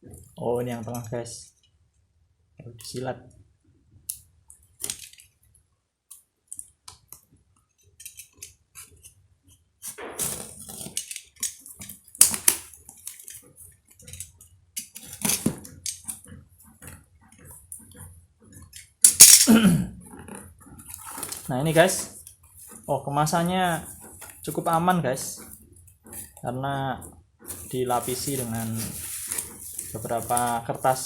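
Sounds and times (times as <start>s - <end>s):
packaging rustling and crinkling: 27.5s - 31.0s.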